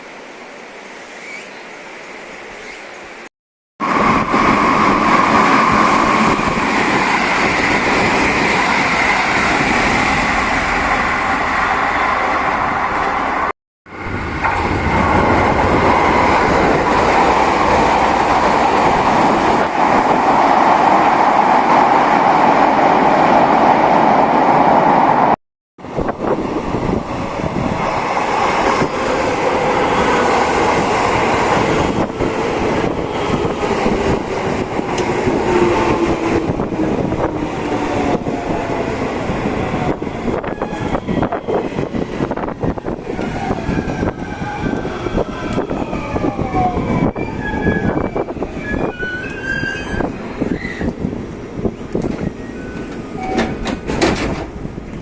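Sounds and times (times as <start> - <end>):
train rumbling on rails: 3.2 - 55.0
train whining tone: 25.8 - 51.1, 51.8 - 54.4.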